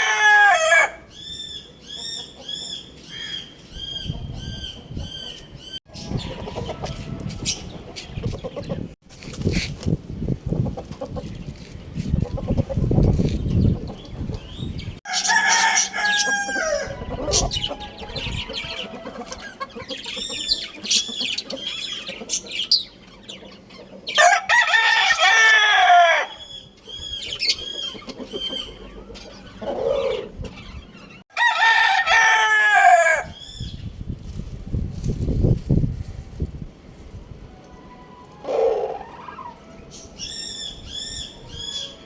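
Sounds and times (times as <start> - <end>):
rooster crowing: 0.0 - 1.1, 5.9 - 7.6, 15.1 - 19.4, 24.2 - 26.4, 31.3 - 33.4
fowl clucking and chirping: 0.0 - 9.0, 10.5 - 31.2, 37.6 - 42.0.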